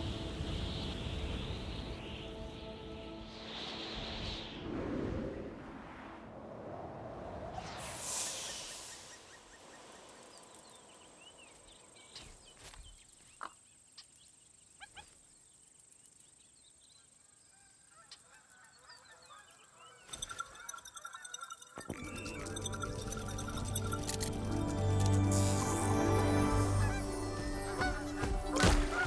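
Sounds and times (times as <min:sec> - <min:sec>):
short chirps: 0:20.1 - 0:25.5
geese honking: 0:25.7 - 0:29.0.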